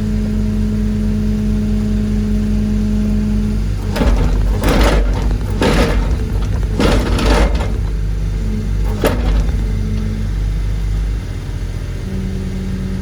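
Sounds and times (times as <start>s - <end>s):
heavy machine engine under load: 3.4s - 11.3s.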